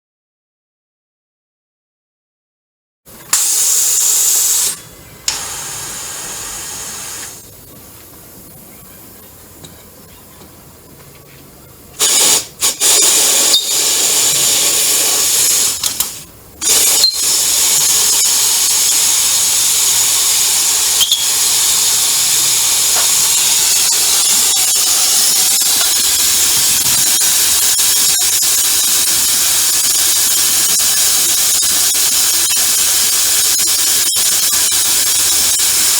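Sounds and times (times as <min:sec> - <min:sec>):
pressurised nozzle spraying: 0:03.4 - 0:07.4, 0:12.0 - 0:35.9.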